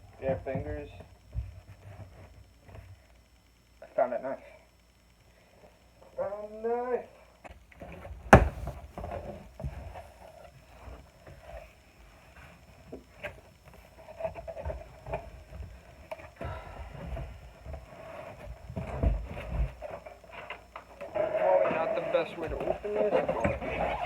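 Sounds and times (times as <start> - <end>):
cardboard box thumps and knocks: 8.0 - 10.1, 16.4 - 20.1
cardboard scraping and tearing: 18.0 - 24.0.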